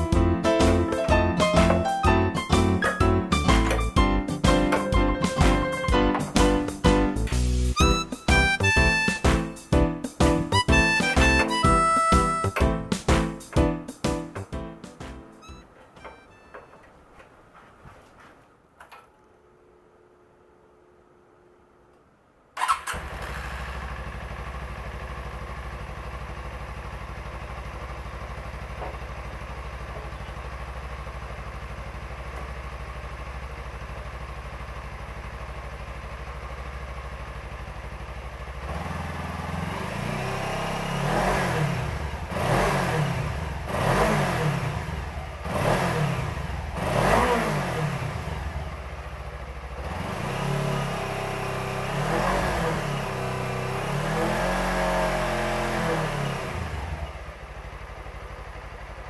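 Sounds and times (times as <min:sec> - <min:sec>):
motorcycle engine starting and idling: 0:00.0 - 0:59.0
throttle blips: 0:15.4 - 0:16.6.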